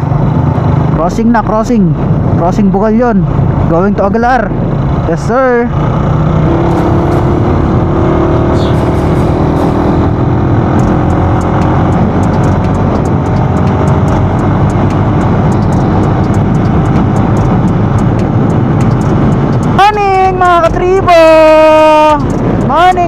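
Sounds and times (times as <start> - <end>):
motorcycle engine running: 4.4 - 23.0
wind noise on microphone: 5.8 - 23.0.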